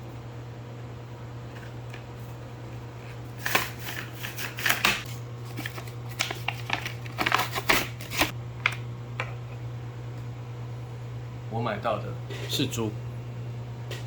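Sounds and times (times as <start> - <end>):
steady low hum: 0.0 - 14.0
packaging crinkling: 3.4 - 8.8.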